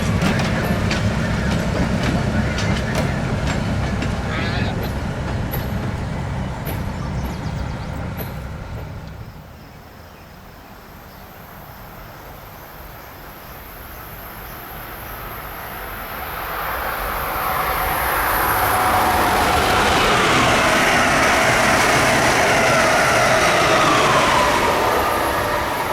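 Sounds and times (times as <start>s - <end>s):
high-speed train rushing: 0.0s - 25.9s
train rumbling: 0.0s - 25.9s.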